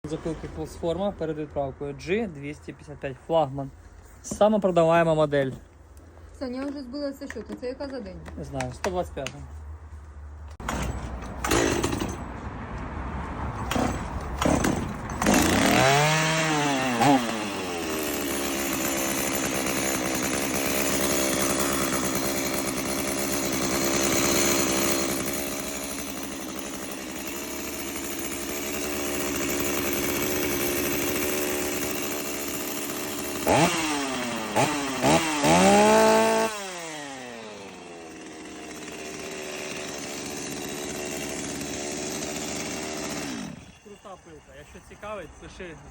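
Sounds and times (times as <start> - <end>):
chainsaw starting and running: 10.5 - 12.8, 13.5 - 45.2
chainsaw revving: 10.6 - 12.3, 13.6 - 44.3.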